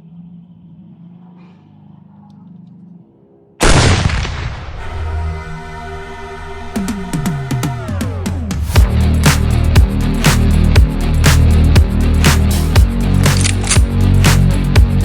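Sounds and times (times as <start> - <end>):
faint low hum: 0.0 - 3.6
loud boom: 3.6 - 9.1
electronic music: 4.8 - 15.0.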